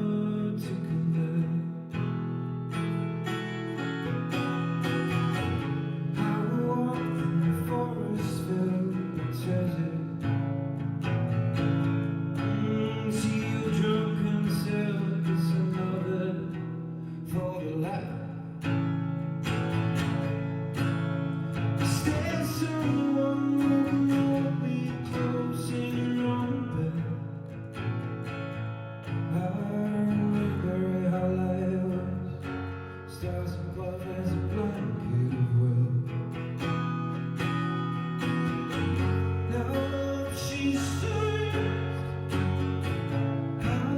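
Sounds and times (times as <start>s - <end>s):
acoustic guitar strummed and picked: 0.0s - 43.9s
person singing: 6.1s - 10.2s, 12.4s - 16.6s, 21.8s - 27.2s, 39.4s - 42.4s.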